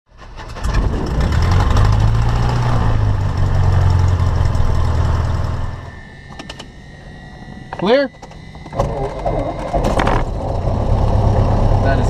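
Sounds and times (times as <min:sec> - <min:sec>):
propeller plane engine drone: 0:00.2 - 0:12.0.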